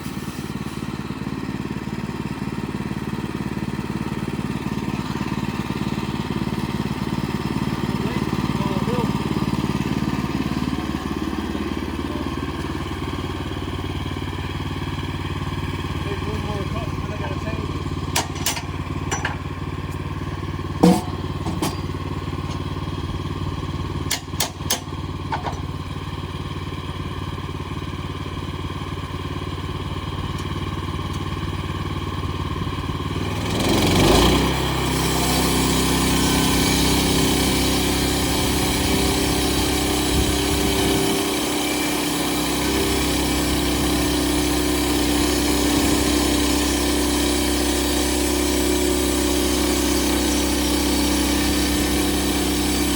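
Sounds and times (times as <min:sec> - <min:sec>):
sawmill petrol engine running: 0:00.0 - 0:52.9
sharp knocks: 0:20.8 - 0:21.9.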